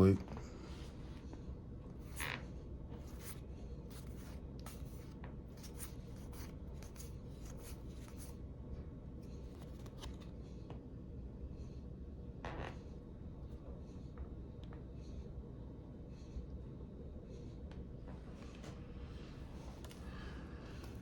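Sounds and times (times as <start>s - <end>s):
cards being flipped through: 9.4s - 10.3s.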